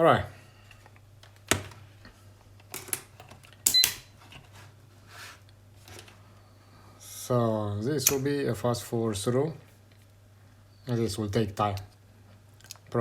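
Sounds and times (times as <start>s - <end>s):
small tools clicking and clattering: 2.6s - 3.9s.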